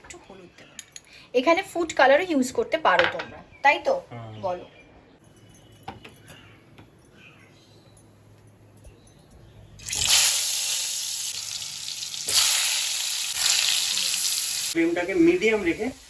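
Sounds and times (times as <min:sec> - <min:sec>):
faint kitchen clatter: 0:00.0 - 0:03.8, 0:04.7 - 0:10.1
potatoes sizzling in hot oil: 0:09.8 - 0:16.0.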